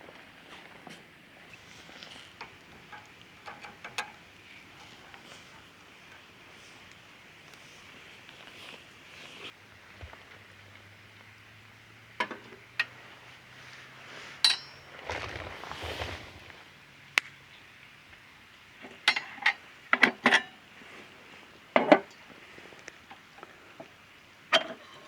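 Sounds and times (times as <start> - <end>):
rustle: 0.0 - 25.0
metal cookware clinking: 14.4 - 15.0
metallic ring: 14.4 - 15.0.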